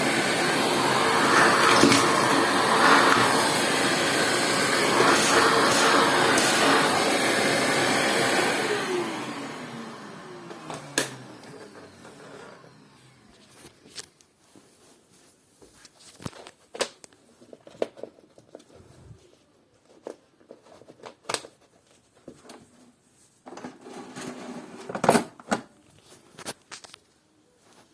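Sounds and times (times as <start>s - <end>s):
vacuum cleaner motor winding down: 0.0s - 13.6s.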